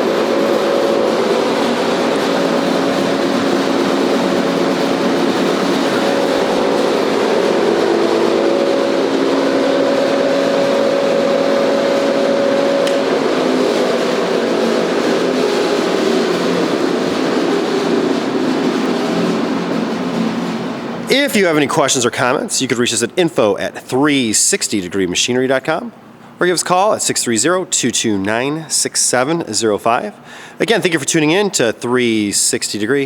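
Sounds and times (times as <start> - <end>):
grinder and conveyor humming: 0.0 - 25.0.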